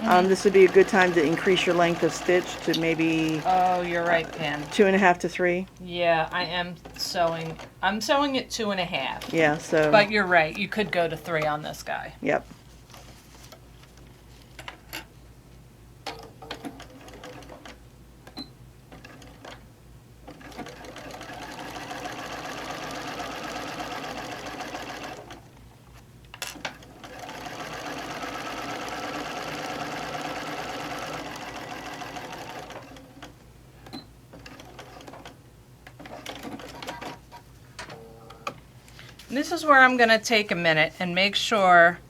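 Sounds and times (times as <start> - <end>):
sewing machine stitching: 0.0 - 5.1, 16.5 - 17.8, 20.3 - 25.5, 26.6 - 33.3, 34.4 - 35.4, 36.0 - 37.2.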